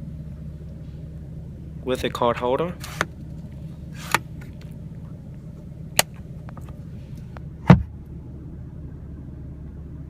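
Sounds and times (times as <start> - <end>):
steady low hum: 0.0 - 10.0
sun visor click: 4.0 - 4.8, 6.0 - 7.9
sun visor knock: 7.6 - 8.0.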